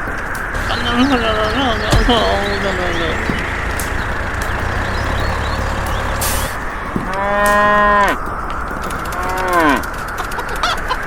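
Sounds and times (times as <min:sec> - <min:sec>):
cow mooing: 0:07.1 - 0:08.2, 0:09.1 - 0:09.9.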